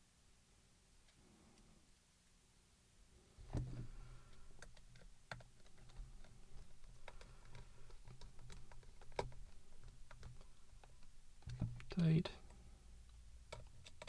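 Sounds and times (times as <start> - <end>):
plastic parts clicking and tapping: 3.5 - 14.0.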